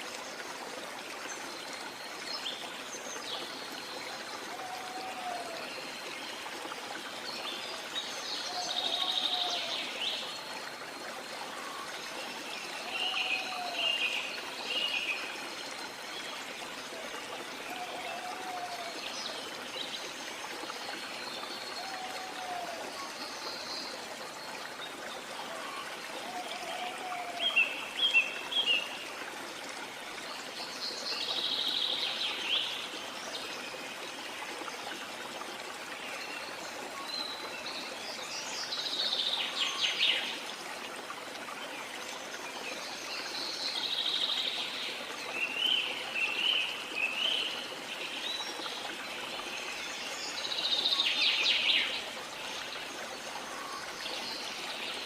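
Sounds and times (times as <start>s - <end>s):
running water: 0.0s - 55.0s.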